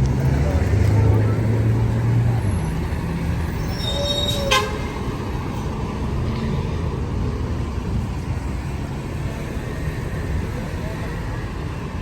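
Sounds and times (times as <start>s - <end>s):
street traffic: 0.0s - 12.0s
vehicle horn toot: 4.1s - 4.9s.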